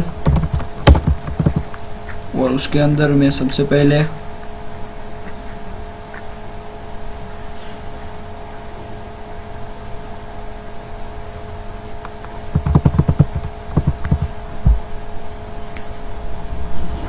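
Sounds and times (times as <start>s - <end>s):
electrical hum: 0.0s - 17.0s
keyboard keystrokes: 0.2s - 1.7s, 12.2s - 14.4s.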